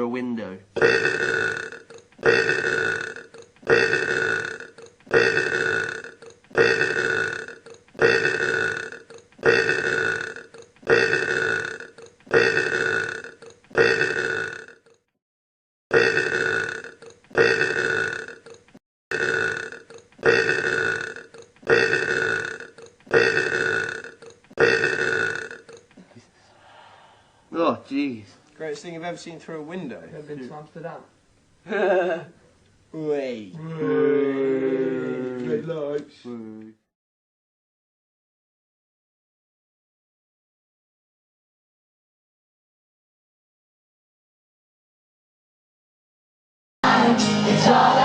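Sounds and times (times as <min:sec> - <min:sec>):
man belching: 0:00.8 - 0:15.0, 0:15.9 - 0:25.9, 0:33.6 - 0:35.7.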